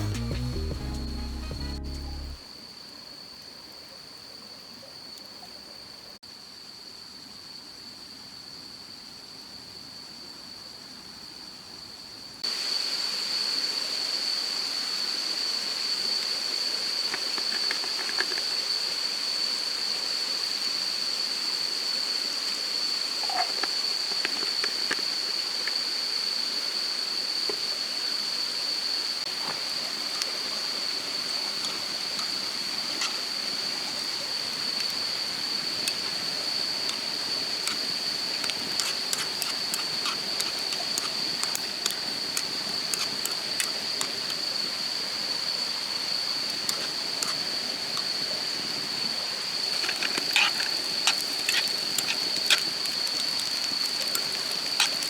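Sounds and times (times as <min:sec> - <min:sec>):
high-pitched tone: 0:00.0 - 0:02.4
wood fire crackling and popping: 0:34.8 - 0:44.4, 0:49.6 - 0:55.0.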